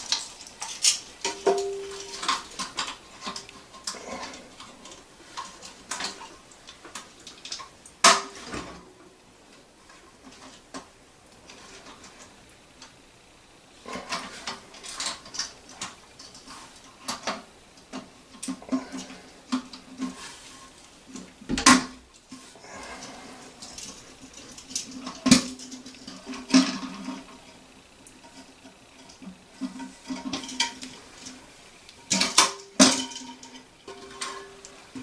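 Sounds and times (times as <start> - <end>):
toilet tank parts clicking: 0.0 - 8.8, 23.6 - 35.0.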